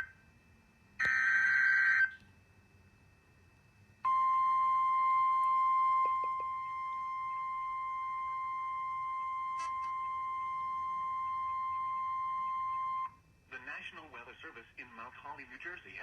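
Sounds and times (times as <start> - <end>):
steady attention tone: 3.8 - 13.2.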